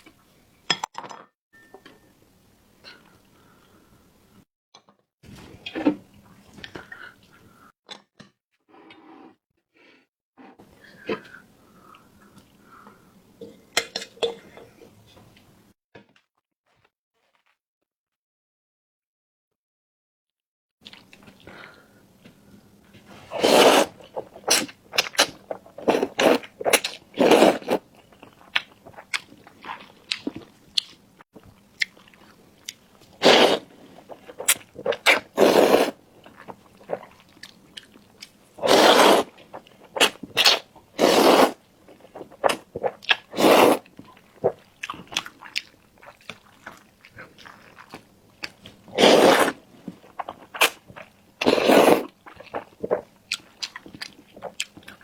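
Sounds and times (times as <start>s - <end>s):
chewing and wet mouth noises: 24.0s - 33.2s, 36.2s - 40.8s, 41.9s - 55.0s.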